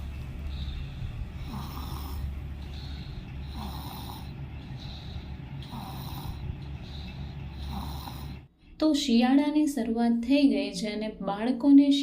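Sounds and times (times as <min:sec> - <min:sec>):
congested baby breathing: 0:00.0 - 0:08.5.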